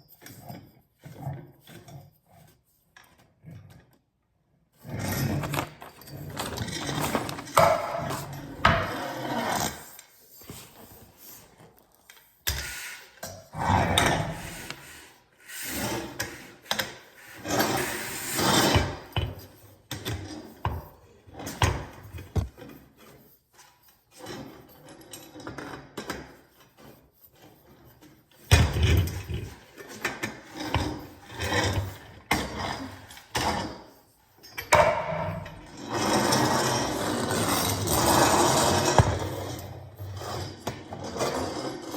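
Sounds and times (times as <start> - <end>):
rough rubbing and scraping: 4.8 - 12.0, 35.2 - 41.9
rubbing and scraping of parts: 4.8 - 41.9
sharp knocks and clicks: 21.6 - 22.6.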